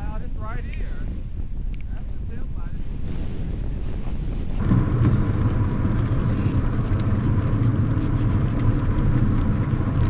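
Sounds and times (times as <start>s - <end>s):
engine and tyre rumble: 4.6s - 10.0s
faint steady whine: 4.6s - 10.0s.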